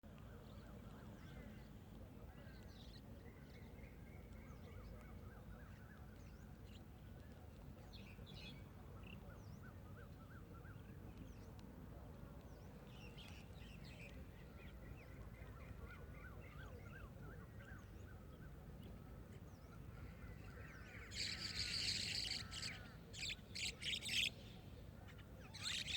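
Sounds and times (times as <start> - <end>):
wild birds chirping: 12.5 - 25.9.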